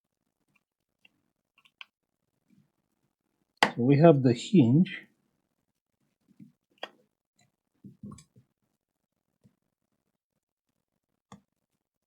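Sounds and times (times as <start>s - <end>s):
faint knocks and clicks: 6.3s - 8.5s.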